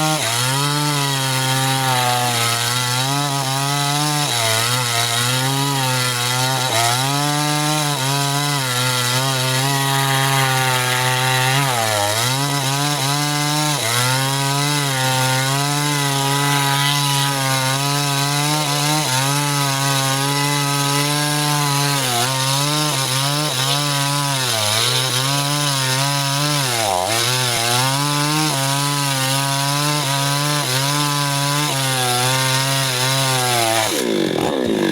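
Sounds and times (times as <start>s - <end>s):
chainsaw cutting log: 0.0s - 34.9s.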